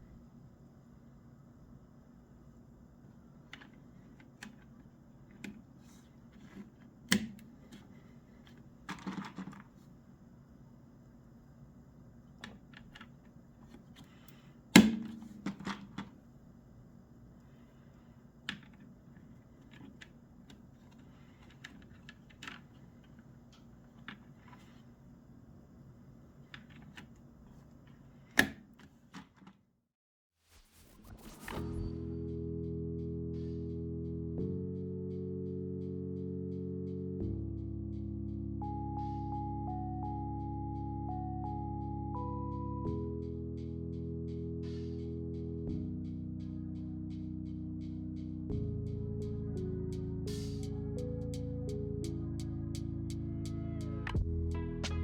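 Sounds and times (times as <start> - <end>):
plastic keyboard parts clicking: 6.4 - 7.9, 8.5 - 9.7, 19.5 - 23.2.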